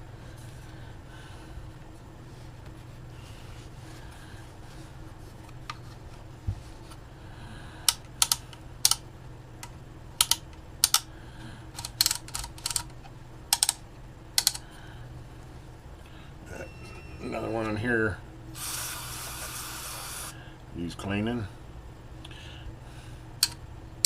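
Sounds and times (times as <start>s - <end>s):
sharp scratchy clicks: 7.9s - 9.0s, 10.2s - 11.0s, 11.8s - 13.8s.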